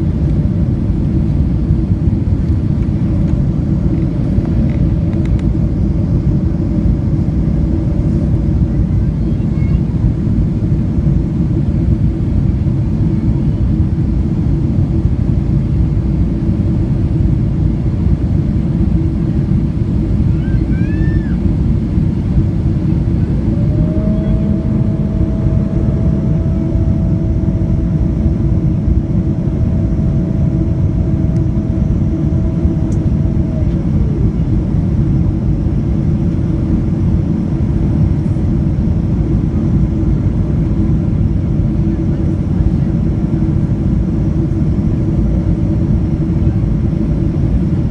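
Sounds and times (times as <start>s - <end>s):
airliner cabin engine rumble: 0.0s - 47.9s
high steady whine: 18.4s - 47.9s.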